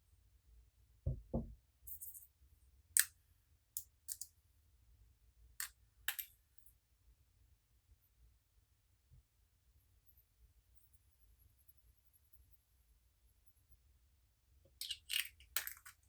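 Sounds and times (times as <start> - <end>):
soft low thuds: 1.1 - 1.5.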